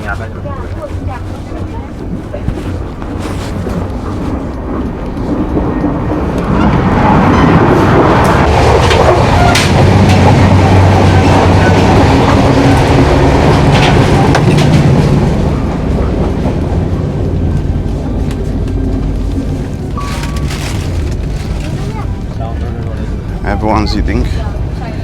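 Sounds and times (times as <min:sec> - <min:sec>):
train wheels rumbling on rails: 0:00.0 - 0:25.0
sharp rail clicks: 0:01.6 - 0:15.1.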